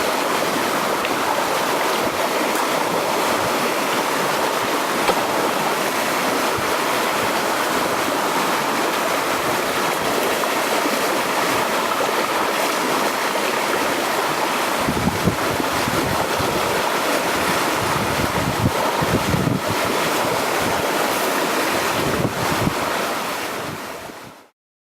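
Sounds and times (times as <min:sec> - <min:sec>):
sea waves washing on shore: 0:00.0 - 0:24.5
wind buffeting microphone: 0:14.8 - 0:21.1, 0:21.8 - 0:24.3.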